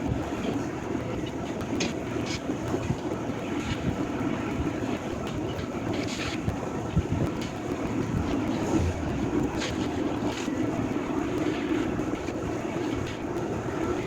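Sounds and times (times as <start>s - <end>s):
demolition machinery engine running: 7.8s - 12.3s.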